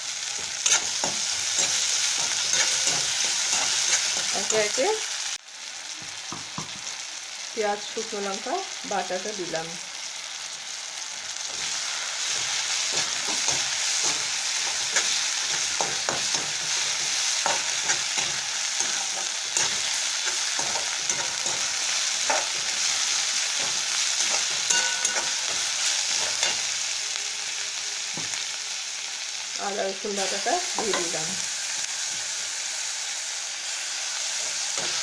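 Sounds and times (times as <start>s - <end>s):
paste sizzling in oil: 0.0s - 35.0s
spatula scraping a pan: 0.3s - 4.6s, 11.4s - 26.7s.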